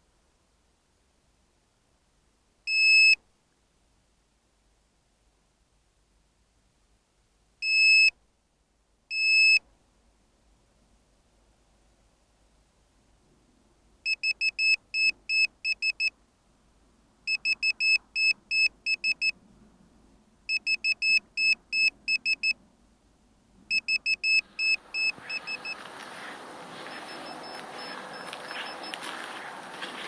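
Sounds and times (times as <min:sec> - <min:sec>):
short high electronic beeps: 0:23.7 - 0:25.8, 0:26.9 - 0:29.0.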